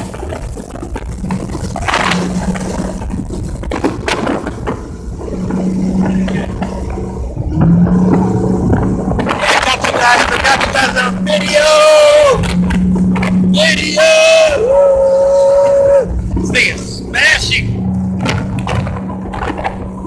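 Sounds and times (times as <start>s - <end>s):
low boat engine hum: 0.0s - 20.0s
rumbling crackling noise: 0.0s - 20.0s
sharp knocks: 18.2s - 19.9s.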